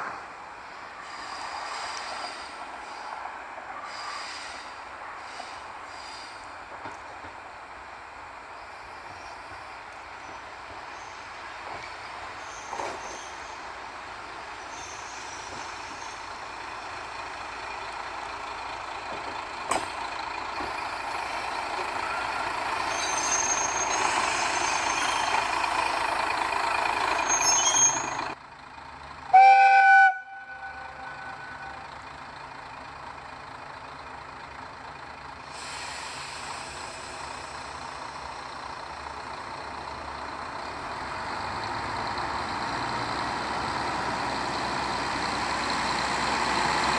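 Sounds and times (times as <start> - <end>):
diesel railcar running: 0.0 - 46.9
train horn blast: 29.3 - 31.9.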